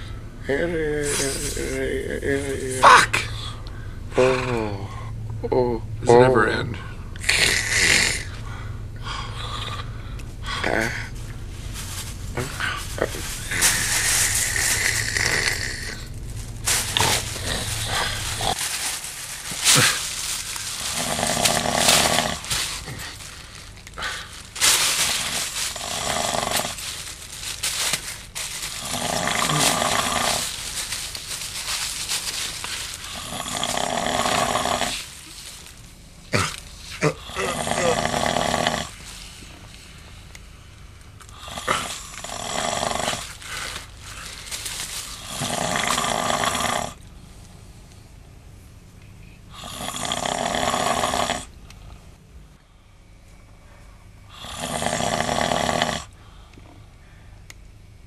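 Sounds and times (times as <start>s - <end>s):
man snoring heavily: 0.5s - 3.5s, 4.2s - 5.1s, 7.2s - 8.4s, 12.4s - 16.1s, 16.8s - 18.7s, 20.8s - 23.4s, 25.0s - 26.9s, 28.7s - 30.6s, 32.9s - 35.1s, 36.4s - 39.0s, 41.3s - 44.3s, 45.1s - 47.0s, 49.5s - 51.5s, 54.3s - 56.2s.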